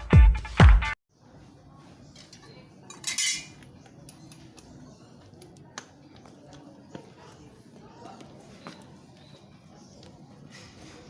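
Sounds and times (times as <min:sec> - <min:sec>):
intro music with heavy beat: 0:00.0 - 0:01.0.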